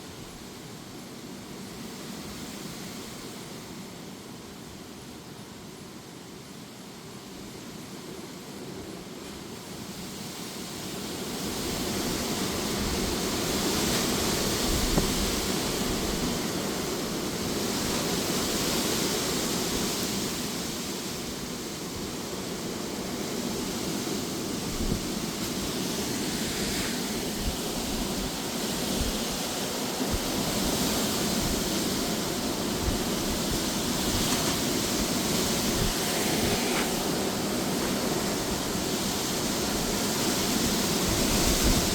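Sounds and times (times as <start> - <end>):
rain: 7.2 - 41.9
gusty wind: 9.0 - 41.9.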